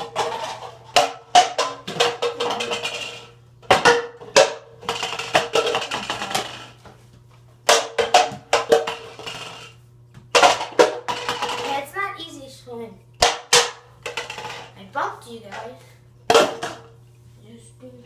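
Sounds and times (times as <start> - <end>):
darts knocking over cans: 0.0 - 6.8, 7.7 - 9.6, 10.3 - 11.7, 13.2 - 14.6, 16.3 - 16.9.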